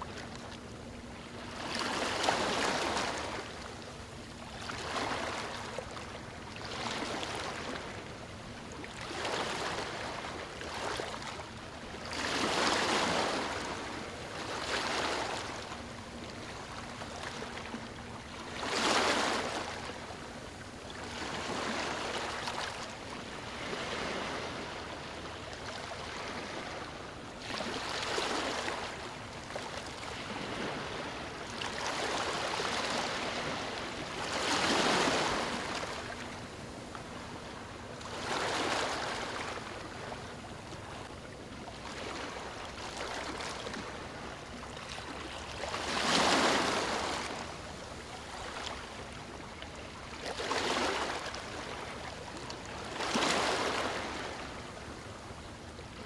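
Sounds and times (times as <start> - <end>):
ocean waves breaking on beach: 30.1 - 36.5, 45.8 - 48.7.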